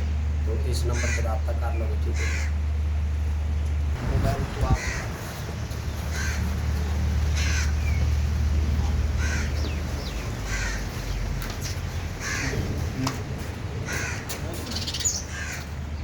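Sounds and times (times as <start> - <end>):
steady low hum: 0.0 - 16.0
bird calling with harsh calls: 0.9 - 2.7, 4.7 - 13.0, 13.8 - 16.0.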